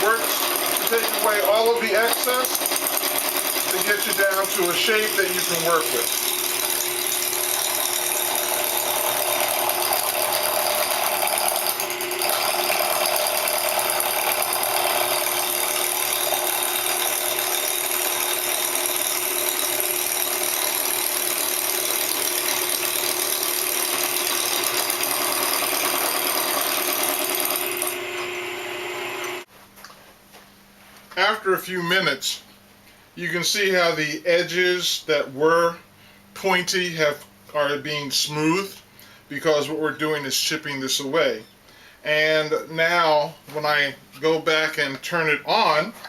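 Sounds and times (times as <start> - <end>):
lathe scraper chattering on wood: 0.0 - 28.4
lathe motor hum: 0.0 - 29.5.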